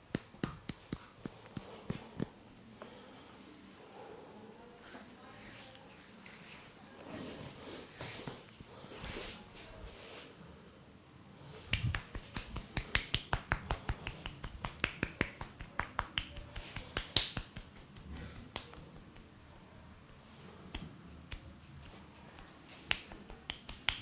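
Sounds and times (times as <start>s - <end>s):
hands tapping on head: 0.0s - 2.4s, 11.7s - 19.4s, 20.7s - 24.0s.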